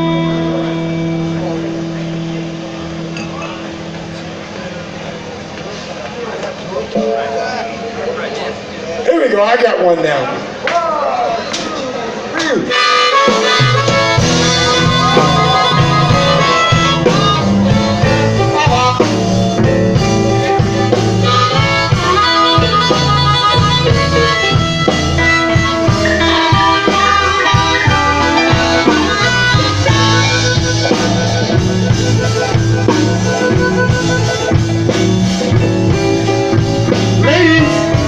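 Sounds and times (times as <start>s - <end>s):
electric guitar: 0.0s - 7.9s, 12.7s - 38.0s
bass: 0.0s - 8.9s, 12.7s - 38.0s
blues harmonica: 12.7s - 38.0s
drum kit: 12.7s - 38.0s.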